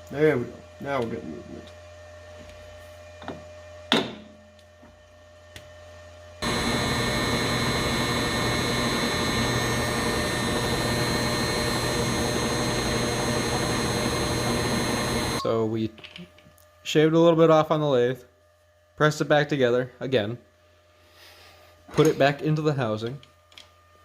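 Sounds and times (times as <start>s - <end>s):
power tool whining: 6.4s - 15.4s.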